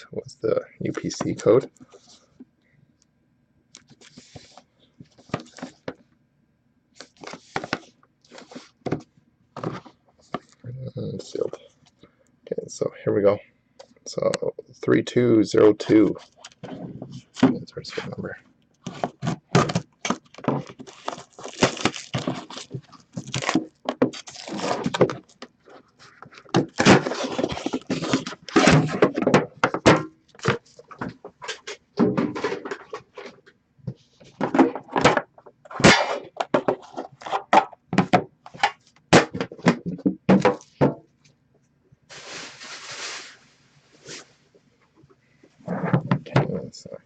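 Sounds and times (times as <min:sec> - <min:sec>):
packaging rustling: 0:18.9 - 0:29.8, 0:42.1 - 0:43.4.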